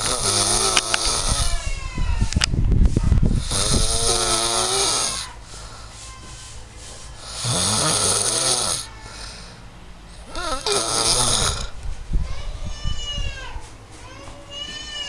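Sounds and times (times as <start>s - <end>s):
person snoring loudly: 0.0s - 1.5s, 3.4s - 5.3s, 7.2s - 8.9s, 10.3s - 11.7s
quiet breathing: 5.4s - 7.6s.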